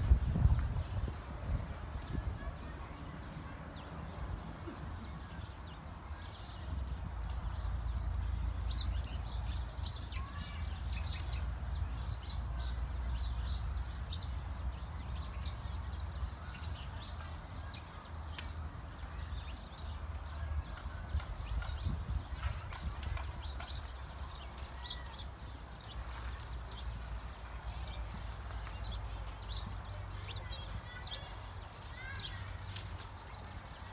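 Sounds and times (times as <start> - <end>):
small birds chirping: 0.0 - 33.9.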